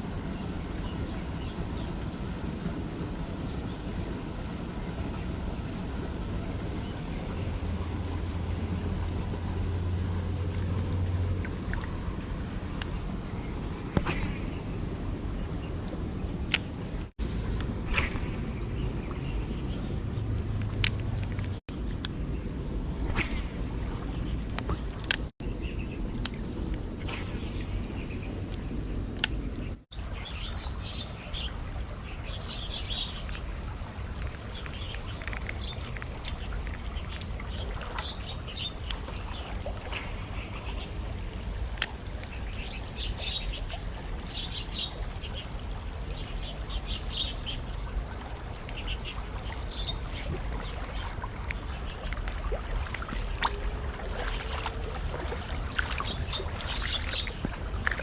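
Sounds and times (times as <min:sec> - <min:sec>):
outdoor background noise: 0:00.0 - 0:58.0
small birds chirping: 0:34.2 - 0:41.2, 0:48.7 - 0:58.0.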